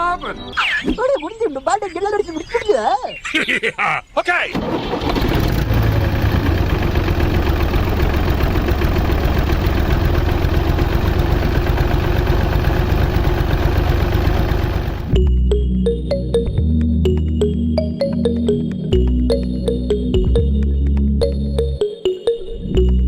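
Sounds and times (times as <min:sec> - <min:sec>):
engine idling with rapid chugging: 0:04.5 - 0:15.2.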